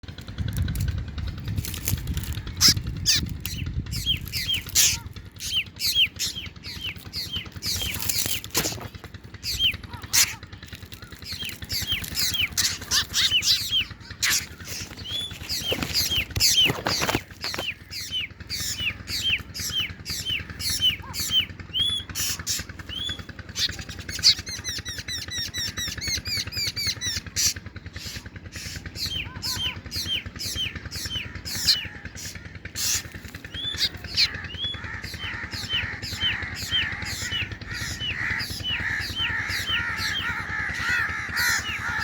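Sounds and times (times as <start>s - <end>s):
low rumble: 0.0s - 16.8s
harsh rasping calls: 0.1s - 42.0s.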